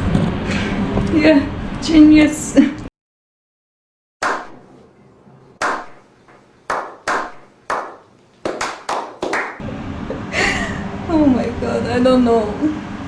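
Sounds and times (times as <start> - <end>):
sharp ringing impacts: 5.6 - 6.1.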